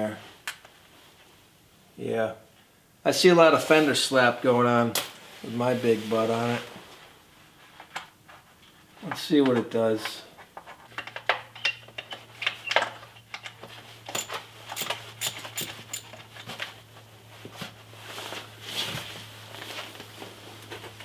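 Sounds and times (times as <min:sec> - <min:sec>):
motorcycle parts clicking and tapping: 0:10.6 - 0:16.7.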